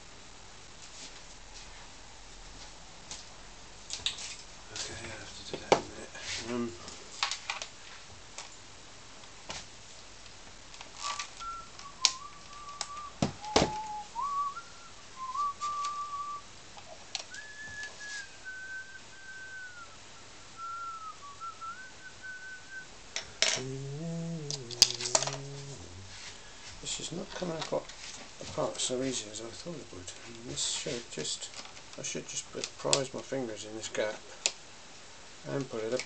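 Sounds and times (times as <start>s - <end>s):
man whistling a tune: 11.0s - 16.4s, 17.3s - 22.9s.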